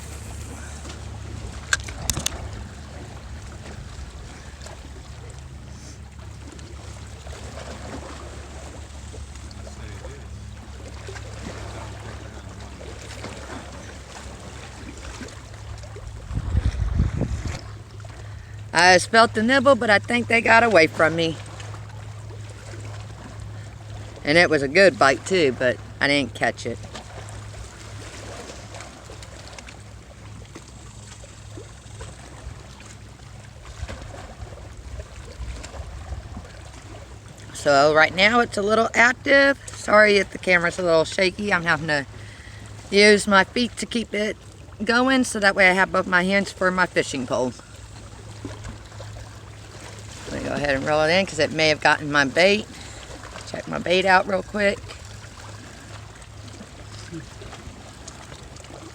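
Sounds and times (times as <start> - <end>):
wind hiss: 0.0 - 1.2
low rumble: 0.0 - 6.2
faint lapping water: 0.0 - 58.9.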